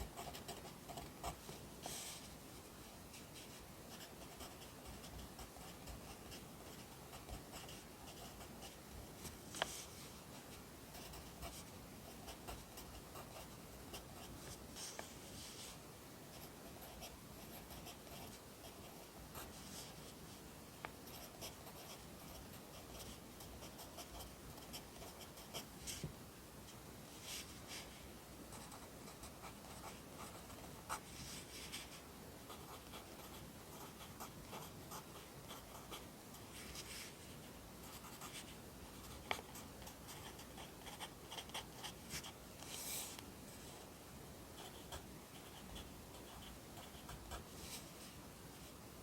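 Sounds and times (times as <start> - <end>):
pen scratching on paper: 0.0 - 2.3, 3.4 - 8.8, 10.9 - 15.6, 16.3 - 20.0, 21.0 - 26.0, 28.5 - 36.0, 37.8 - 43.1, 44.6 - 47.5.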